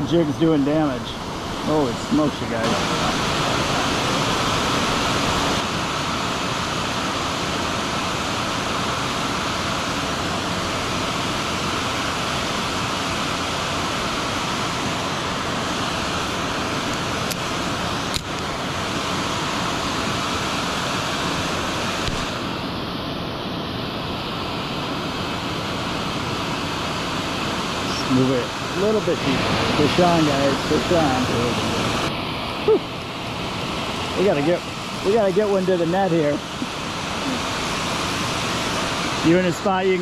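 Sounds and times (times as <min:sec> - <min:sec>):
creek water rushing: 0:00.0 - 0:22.8, 0:24.0 - 0:40.0.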